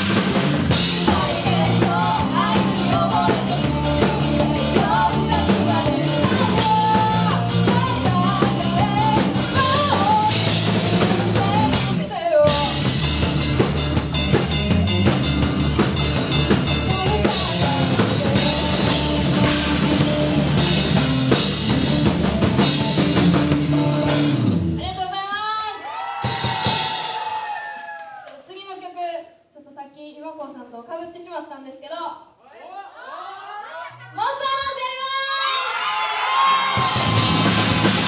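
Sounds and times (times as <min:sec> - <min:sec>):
band music: 0:00.0 - 0:25.6, 0:36.5 - 0:38.0.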